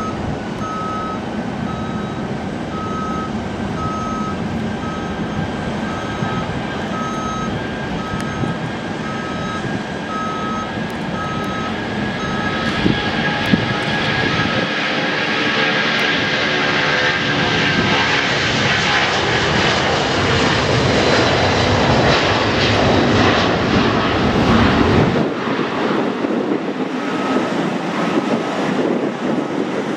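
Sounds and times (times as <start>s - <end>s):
electronic beeping: 0.0s - 2.2s, 2.8s - 12.7s
jet engines roaring: 0.0s - 29.9s.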